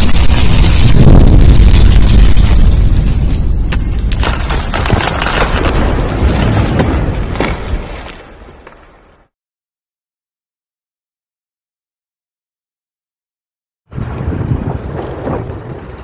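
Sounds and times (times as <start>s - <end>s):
explosion boom rumbling: 0.0s - 7.7s, 13.9s - 15.8s
sharp crackles: 0.0s - 9.3s.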